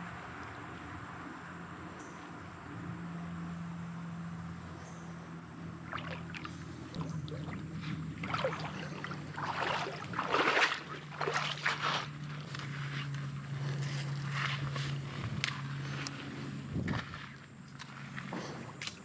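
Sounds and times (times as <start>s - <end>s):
steady low hum: 0.0s - 19.0s
water splashing in creek: 5.6s - 19.0s.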